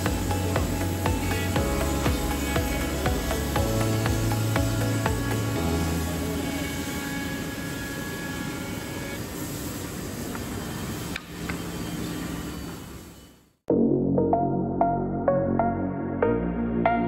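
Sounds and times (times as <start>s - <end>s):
machine humming and whining: 0.0s - 13.6s.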